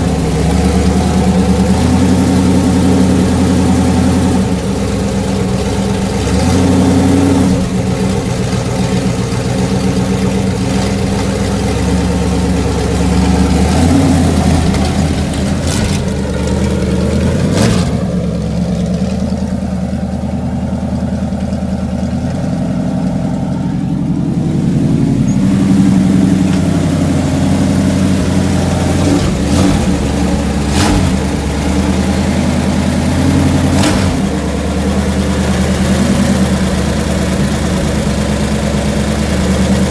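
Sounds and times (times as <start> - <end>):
car engine idling and revving: 0.0 - 39.9.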